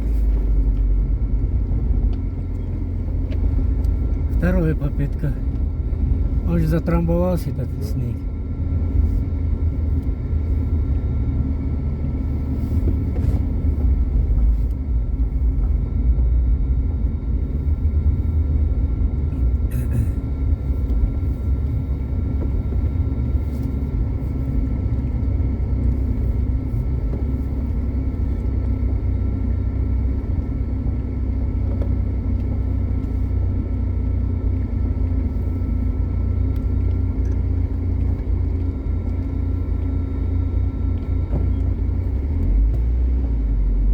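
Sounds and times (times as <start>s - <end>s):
car engine rumbling: 0.0s - 43.9s
faint constant whine: 0.0s - 43.9s.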